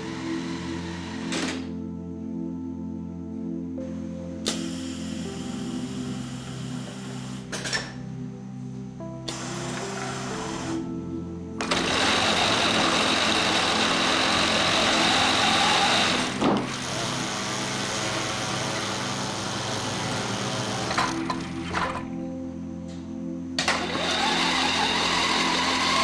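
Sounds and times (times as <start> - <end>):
vacuum cleaner whirring: 0.0 - 1.7, 9.3 - 10.9, 11.6 - 22.2, 23.6 - 26.0.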